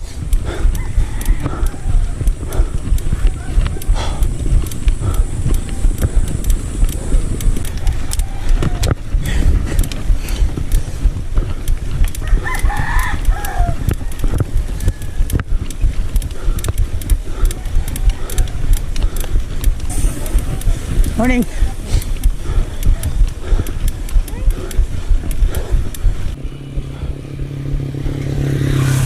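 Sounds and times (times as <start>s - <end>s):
scattered clicks: 0.0s - 26.5s
wind rumble on microphone: 0.0s - 29.0s
rooster crowing: 0.6s - 2.3s, 12.2s - 15.4s.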